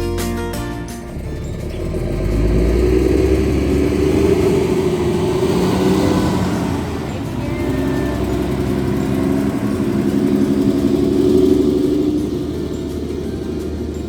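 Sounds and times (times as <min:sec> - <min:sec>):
vehicle engine running: 0:00.6 - 0:14.0.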